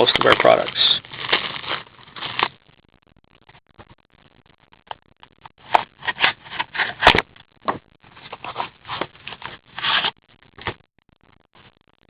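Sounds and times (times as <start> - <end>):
wrappers rustling and tearing: 0.0 - 2.6, 8.1 - 10.2
cards scraping together: 5.6 - 7.2, 8.1 - 10.7.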